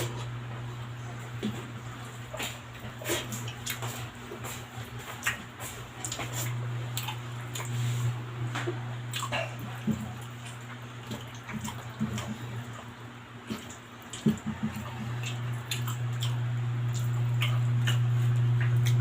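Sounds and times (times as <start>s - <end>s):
low steady hum: 0.0s - 19.0s
wet chewing and lip smacks: 2.3s - 7.8s, 9.1s - 19.0s.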